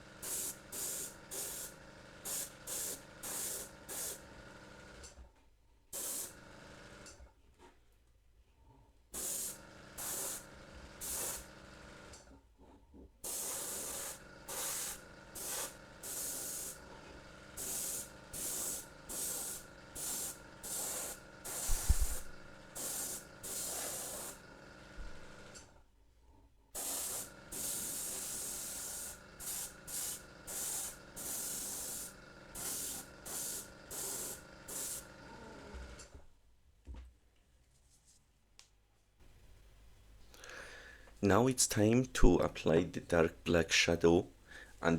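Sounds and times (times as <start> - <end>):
airbrush hissing bursts: 0.2 - 4.2, 6.0 - 6.4, 9.2 - 11.5, 13.2 - 16.8, 17.6 - 24.4, 26.8 - 35.1.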